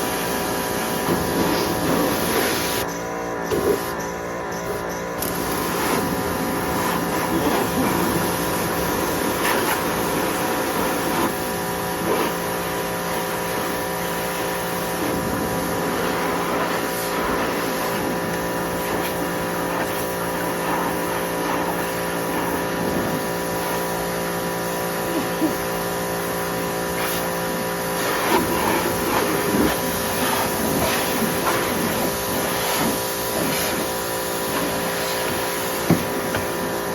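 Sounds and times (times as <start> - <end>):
water spray hissing: 0.0 - 2.9, 3.5 - 36.9
pressure washer motor whining: 0.0 - 36.9.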